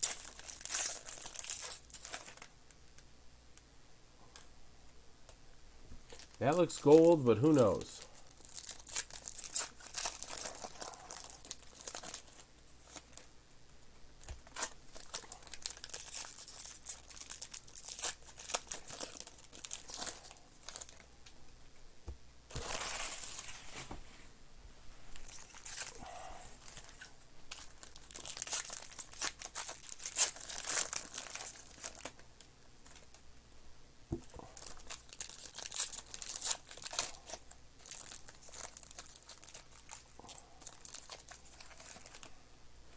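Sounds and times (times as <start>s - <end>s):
card pack wrappers crinkling: 0.0s - 3.0s, 6.1s - 13.3s, 14.2s - 21.1s, 22.5s - 23.7s, 25.1s - 32.2s, 34.3s - 42.3s.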